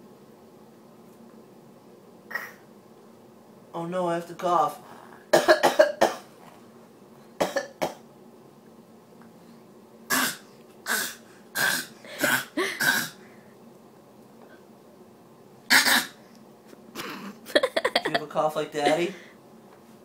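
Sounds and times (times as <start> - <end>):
child coughing: 5.4 - 6.3, 7.4 - 8.0, 10.1 - 13.2, 15.7 - 16.2.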